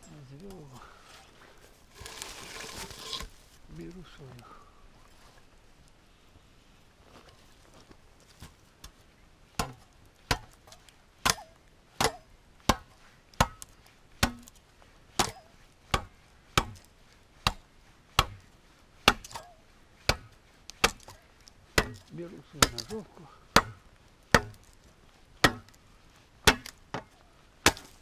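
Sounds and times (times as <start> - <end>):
blade chopping wood: 9.6 - 10.6, 11.2 - 14.6, 15.2 - 17.6, 18.2 - 18.4, 19.0 - 21.2, 21.8 - 24.8, 25.4 - 25.8, 26.4 - 28.0.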